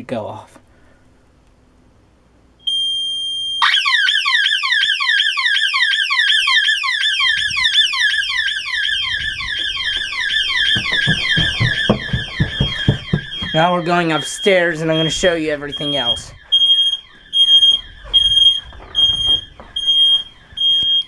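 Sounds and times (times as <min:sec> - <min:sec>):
fast falling siren wail: 0:03.6 - 0:21.0
steady high beep: 0:09.8 - 0:21.0.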